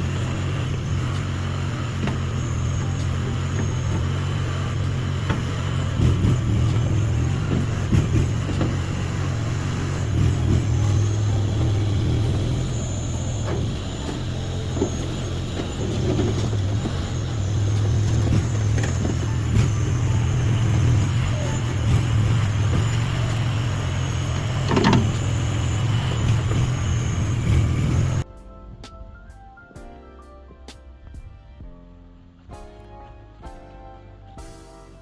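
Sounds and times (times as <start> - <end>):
small engine running: 0.0 - 28.2.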